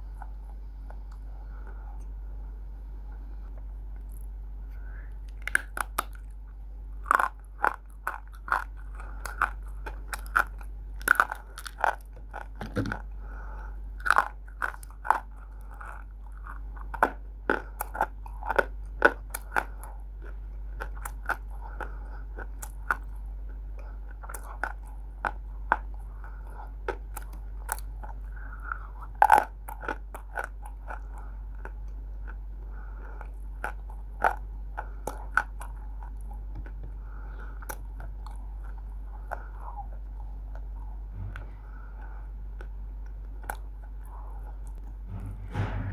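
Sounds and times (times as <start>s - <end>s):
crisp crunching while chewing: 5.3s - 6.4s, 7.0s - 13.1s.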